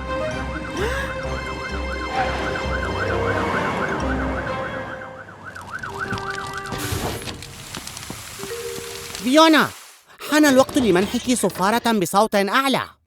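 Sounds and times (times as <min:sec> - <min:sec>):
cartoon fire truck siren wailing: 0:00.0 - 0:06.9.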